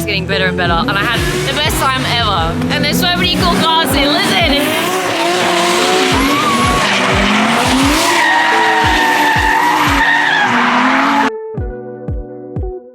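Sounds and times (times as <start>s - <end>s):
car engine: 0.0s - 11.3s
music with deep beat: 0.6s - 12.8s
tyre squeal: 3.4s - 11.3s.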